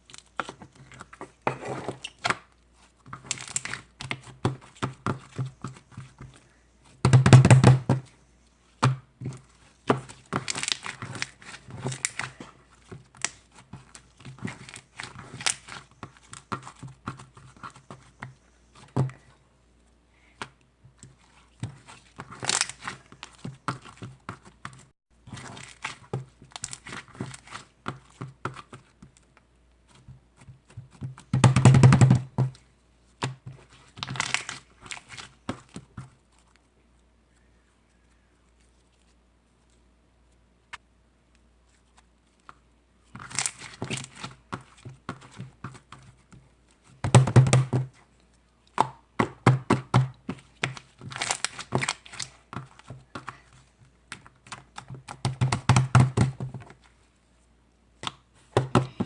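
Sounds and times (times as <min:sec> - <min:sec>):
crinkling rustles: 0:33.0 - 0:40.8, 0:50.2 - 0:55.1.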